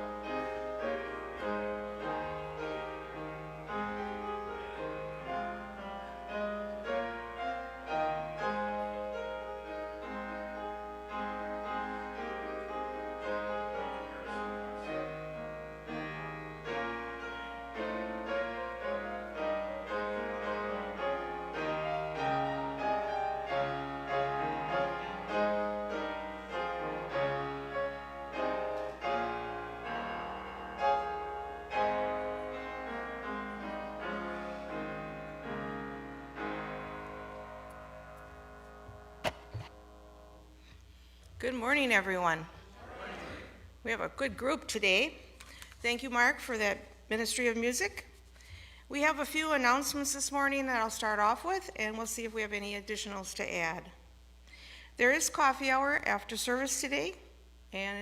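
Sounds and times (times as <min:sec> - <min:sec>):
slow classical keyboard piece: 0:00.0 - 0:45.7.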